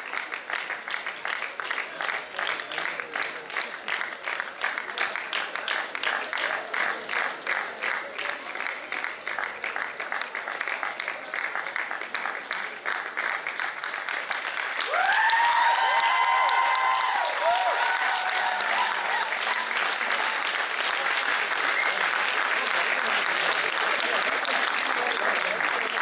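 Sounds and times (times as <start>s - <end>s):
audience applauding: 0.0s - 26.0s
people cheering: 14.5s - 26.0s.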